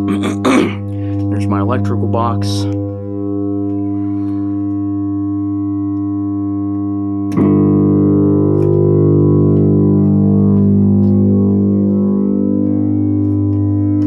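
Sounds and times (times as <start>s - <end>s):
electronic keyboard low buzzing tone: 0.0s - 14.0s.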